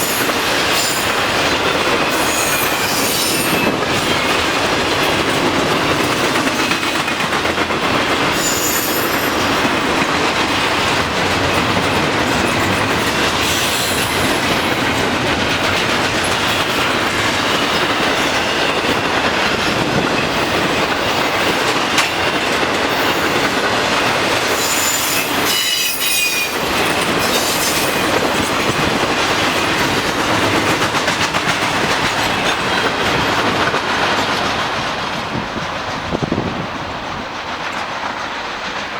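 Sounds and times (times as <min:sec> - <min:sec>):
train wheels rumbling on rail: 0:00.0 - 0:38.9
high-pitched wheel squeals: 0:24.6 - 0:26.6.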